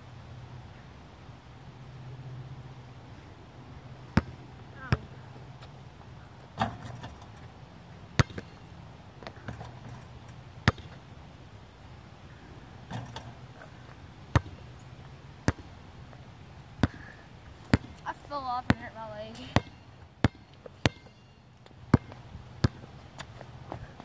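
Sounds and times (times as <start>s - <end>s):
basketball bouncing on court: 4.2s - 5.7s, 8.2s - 8.6s, 10.6s - 11.0s, 14.3s - 14.6s, 15.4s - 15.7s, 16.8s - 21.2s, 21.9s - 23.9s.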